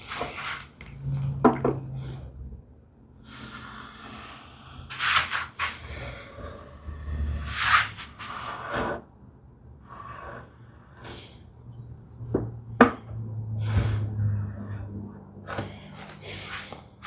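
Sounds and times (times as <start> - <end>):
tools scraping and rustling: 15.5 - 17.0.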